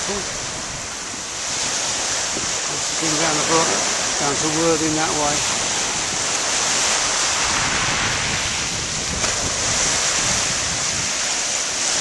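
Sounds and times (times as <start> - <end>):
sea waves washing onto beach: 0.0 - 12.0
wind buffeting microphone: 0.0 - 12.0.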